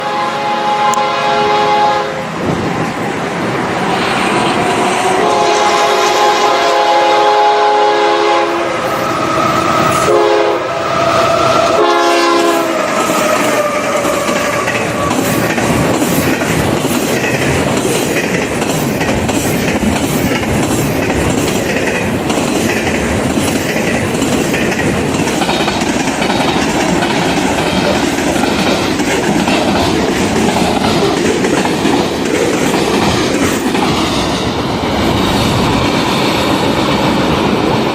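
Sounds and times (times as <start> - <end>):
locomotive air horn: 0.0 - 2.4, 5.0 - 13.2
train wheels clacking over rail joints: 11.1 - 37.9.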